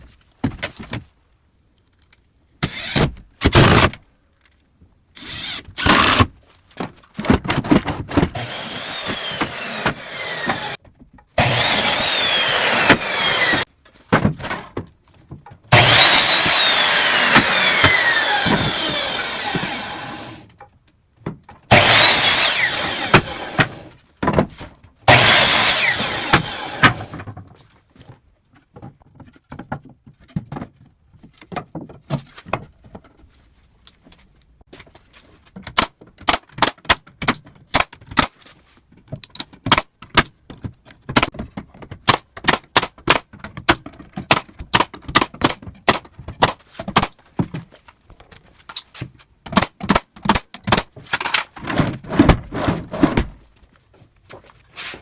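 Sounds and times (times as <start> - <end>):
power tool running: 8.4 - 10.8, 11.4 - 13.7, 15.7 - 20.4, 21.7 - 23.9, 25.1 - 27.1.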